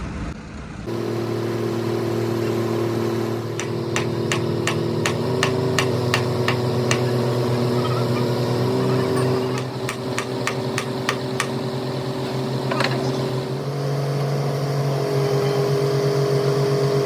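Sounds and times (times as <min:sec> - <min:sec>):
engine running with low hum: 0:00.0 - 0:17.0
sharp taps or knocks: 0:03.6 - 0:07.4, 0:09.6 - 0:11.6.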